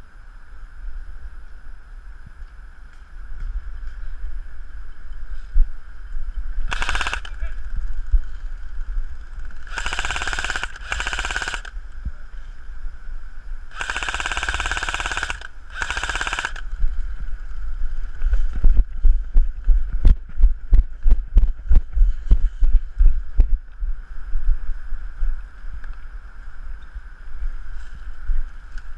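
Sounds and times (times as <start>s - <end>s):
airsoft gun automatic bursts: 6.7s - 7.6s, 9.4s - 11.8s, 13.7s - 16.7s.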